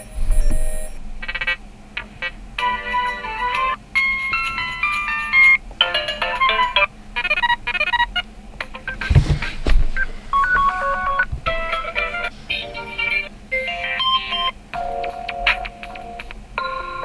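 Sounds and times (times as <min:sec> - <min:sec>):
low drum thumps: 0:09.0 - 0:12.0.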